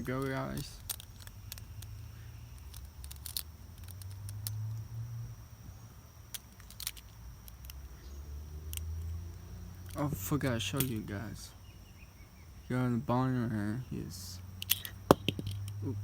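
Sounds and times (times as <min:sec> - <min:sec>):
plastic spinning top parts clicking: 0:00.0 - 0:04.8, 0:06.3 - 0:07.8, 0:14.6 - 0:15.8.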